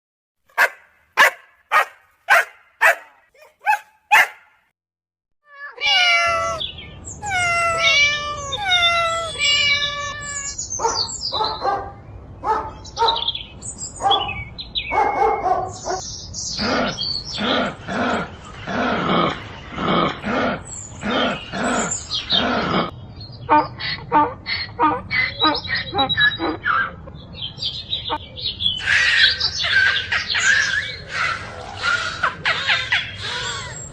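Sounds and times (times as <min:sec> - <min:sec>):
dog barking: 0:00.6 - 0:04.5, 0:10.8 - 0:13.3, 0:14.0 - 0:16.0
cat meowing: 0:05.4 - 0:10.6.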